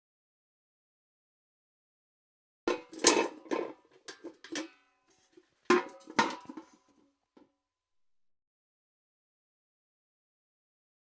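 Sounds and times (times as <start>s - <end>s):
metal bucket clanking: 2.7s - 6.9s.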